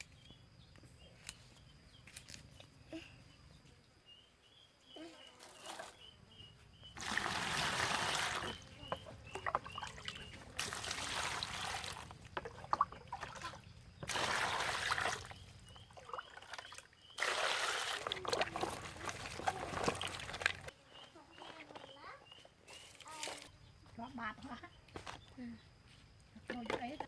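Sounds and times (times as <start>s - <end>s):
water splashing and pouring: 7.0s - 8.6s, 9.3s - 20.7s.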